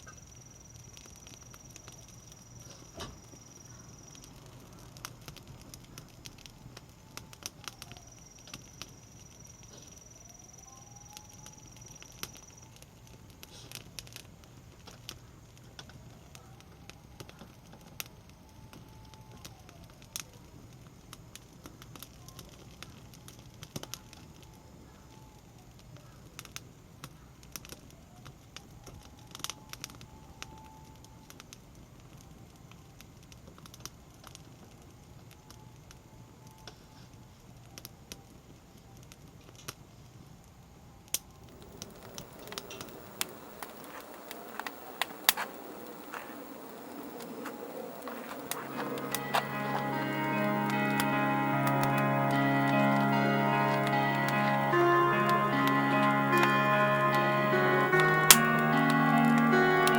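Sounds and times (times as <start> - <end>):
campfire crackling and popping: 0.0 - 24.7, 41.1 - 59.9.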